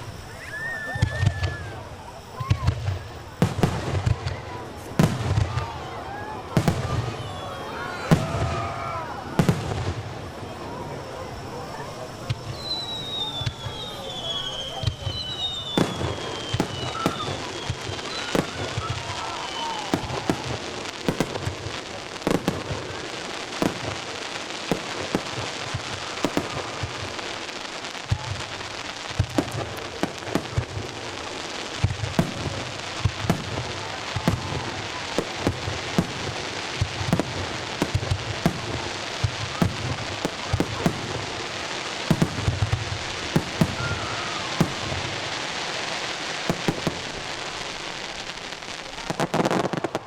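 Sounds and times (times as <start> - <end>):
fireworks crackle and pops: 0.0 - 50.0
low booms of shells bursting: 31.8 - 45.5.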